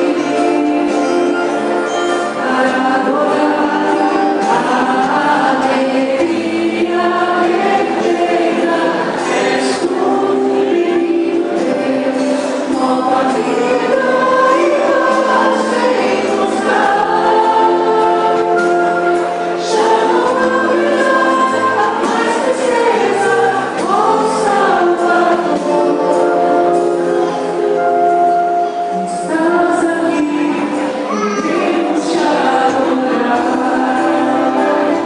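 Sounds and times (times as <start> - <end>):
choir singing a hymn: 0.0 - 35.0.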